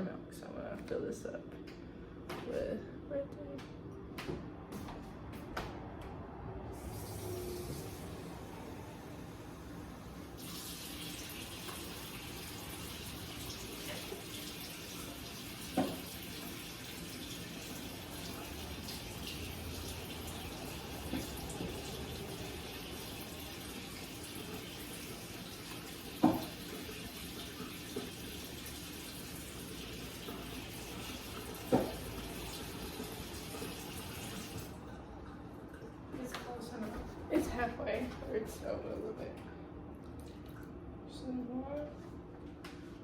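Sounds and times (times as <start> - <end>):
tap water running into a cup: 6.8 - 8.8, 10.0 - 36.0.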